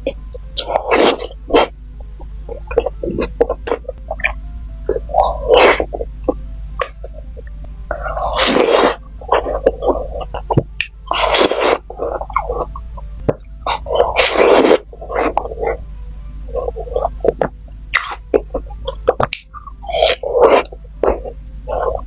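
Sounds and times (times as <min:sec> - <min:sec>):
loud hissing slurps: 0:04.9 - 0:06.0, 0:07.9 - 0:10.2, 0:13.7 - 0:15.8, 0:19.8 - 0:22.0.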